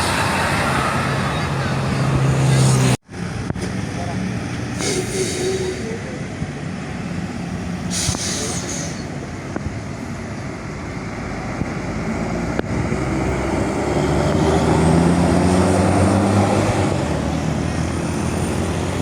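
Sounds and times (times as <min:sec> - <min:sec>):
heavy vehicle engine: 0:00.0 - 0:19.0
air-brake hiss: 0:04.8 - 0:06.0, 0:07.9 - 0:09.2.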